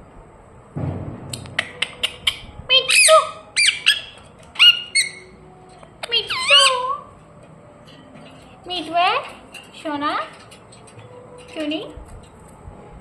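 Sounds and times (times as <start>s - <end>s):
parrot chirping and squawking: 1.6s - 7.2s.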